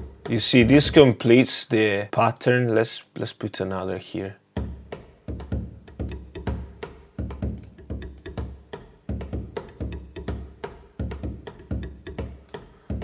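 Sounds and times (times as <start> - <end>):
kick drum: 0.0 - 1.0, 4.5 - 13.0
clicky percussion hits: 4.6 - 13.0.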